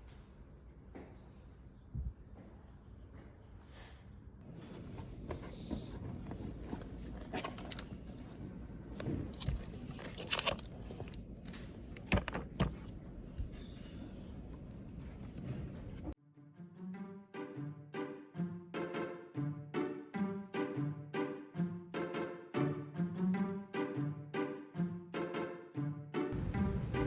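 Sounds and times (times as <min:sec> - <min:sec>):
crunching and scraping: 0:05.1 - 0:12.9.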